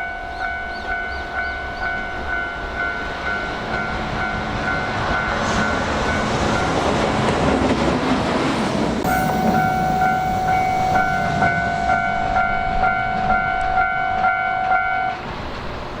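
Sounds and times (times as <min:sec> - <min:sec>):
freight train rumbling: 0:00.0 - 0:16.0
level-crossing alarm dinging: 0:09.0 - 0:15.2
steady alarm tone: 0:09.0 - 0:15.2.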